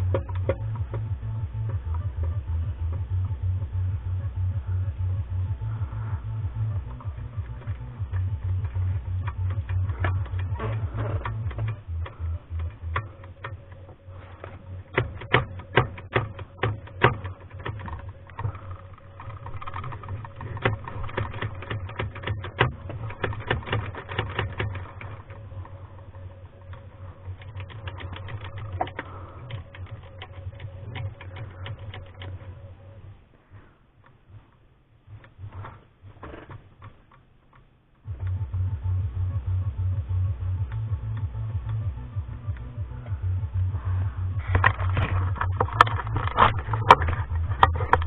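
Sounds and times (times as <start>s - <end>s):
low hum: 0.0s - 48.0s
typewriter clicking and clattering: 14.9s - 25.4s, 27.2s - 32.4s.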